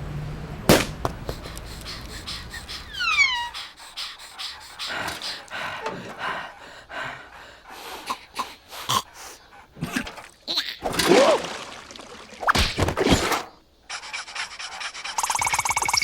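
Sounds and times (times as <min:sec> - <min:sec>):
breathy gasps and snorts: 0:01.3 - 0:10.2
wavering squeal: 0:02.9 - 0:03.6.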